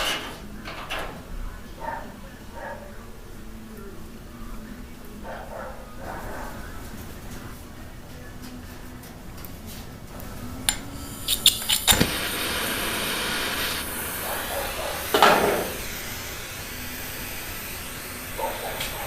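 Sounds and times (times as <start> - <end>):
torch flame hissing: 10.2 - 19.0
torch igniter clicks: 10.6 - 19.0.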